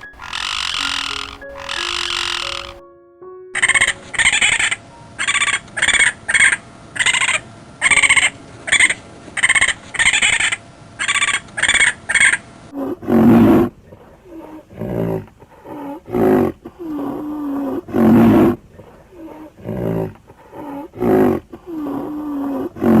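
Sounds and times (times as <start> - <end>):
short high-pitched calls: 0.0 - 2.8
lion roaring: 12.8 - 18.6, 19.2 - 20.2.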